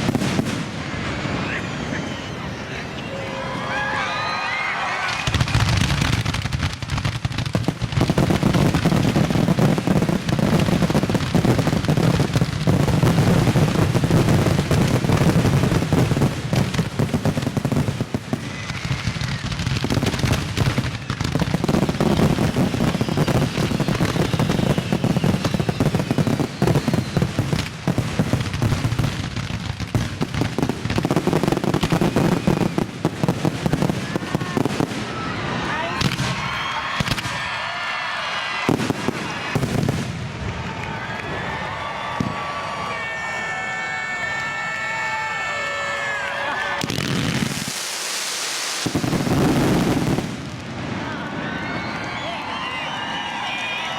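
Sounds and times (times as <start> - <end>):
whistling rockets: 0.0 - 53.9
firework shell bursts and crackling: 46.8 - 50.5.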